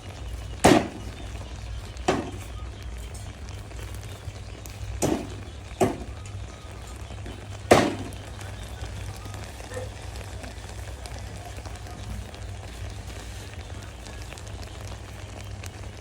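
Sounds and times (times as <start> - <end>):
food sizzling on a grill: 0.0 - 16.0
sharp knocks: 2.1 - 2.4, 5.0 - 6.2, 7.7 - 8.2.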